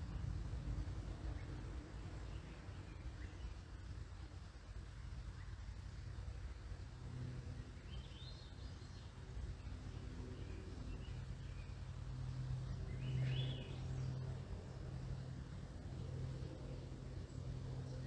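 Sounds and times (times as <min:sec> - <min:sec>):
songbird chirping: 0:10.3 - 0:15.3.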